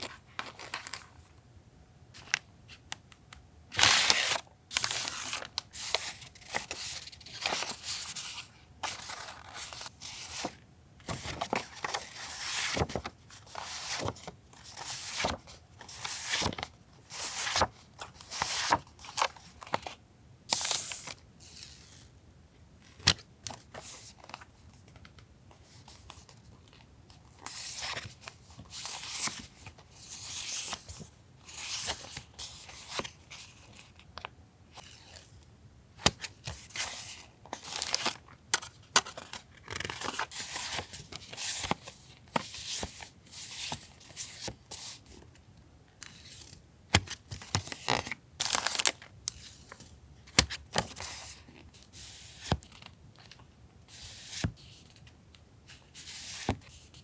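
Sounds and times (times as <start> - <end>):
paper and plastic rustling: 3.8 - 19.4.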